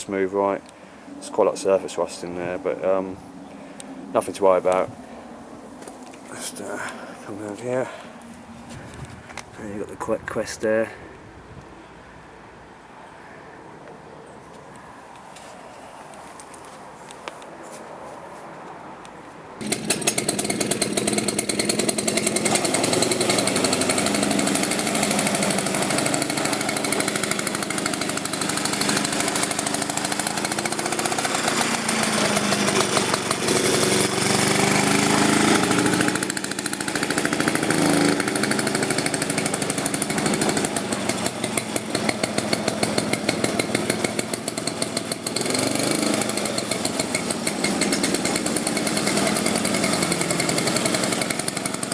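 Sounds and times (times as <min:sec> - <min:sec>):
lawnmower engine rattly firing: 0:19.6 - 0:51.9.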